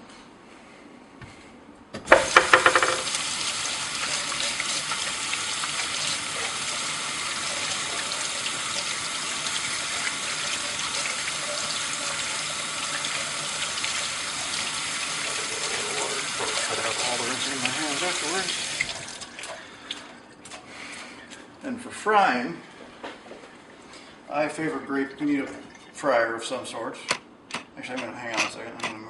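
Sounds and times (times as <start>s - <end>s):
kitchen tap clatter: 2.0s - 3.2s, 16.4s - 18.1s
water running into sink: 2.1s - 20.1s.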